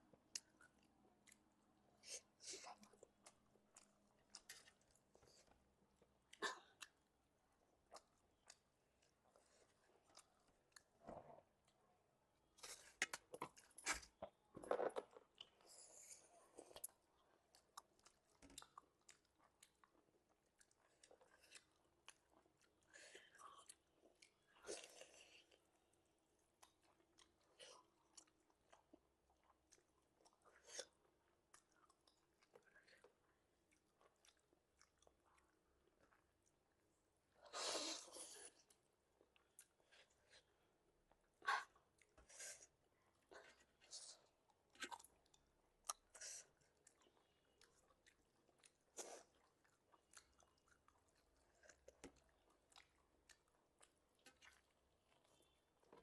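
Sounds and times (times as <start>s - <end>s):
chewing and mouth smacking: 2.7s - 7.0s, 16.4s - 36.8s, 41.1s - 56.0s.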